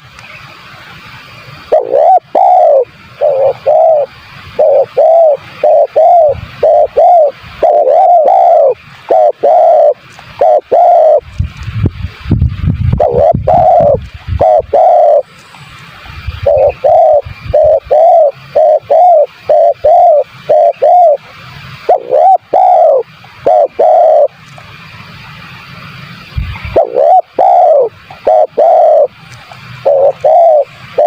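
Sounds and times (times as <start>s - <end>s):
dove cooing: 1.6s - 11.2s, 13.0s - 15.3s, 16.4s - 21.2s, 21.8s - 24.4s, 26.5s - 31.0s.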